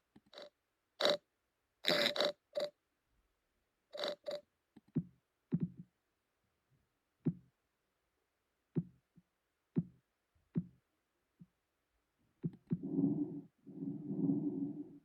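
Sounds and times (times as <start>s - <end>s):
dull thumps with faint clicks: 4.8s - 5.9s, 7.2s - 7.5s, 8.7s - 10.8s, 12.4s - 12.8s.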